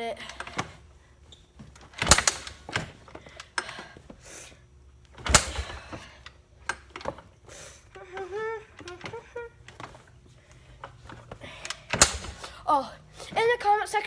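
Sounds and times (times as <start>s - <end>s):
motorbike kickstart clunk: 1.9s - 3.0s, 5.2s - 7.2s, 11.7s - 12.5s.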